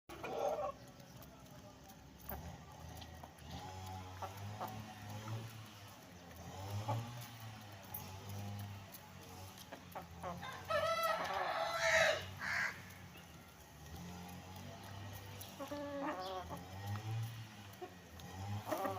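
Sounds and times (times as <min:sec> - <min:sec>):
chickens clucking: 0:00.1 - 0:18.9
rooster crowing: 0:10.4 - 0:12.9.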